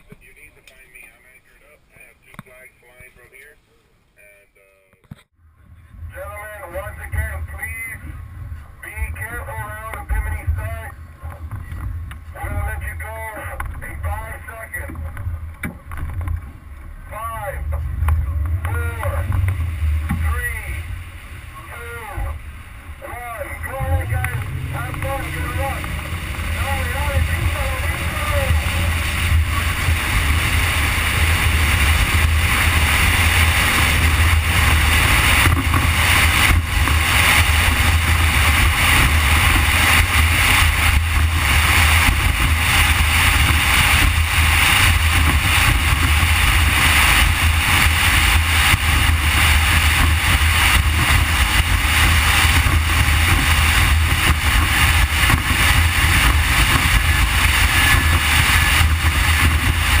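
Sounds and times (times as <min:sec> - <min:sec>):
outboard engine drone: 0:05.3 - 1:00.0
rushing wind: 0:05.4 - 1:00.0
rushing water: 0:17.1 - 1:00.0.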